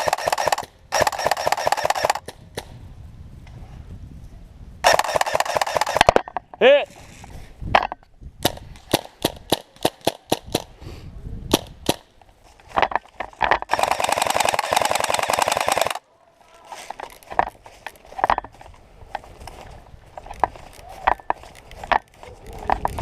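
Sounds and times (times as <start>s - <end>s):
airsoft full-auto burst: 0.0s - 2.3s, 4.8s - 6.1s, 13.7s - 16.0s.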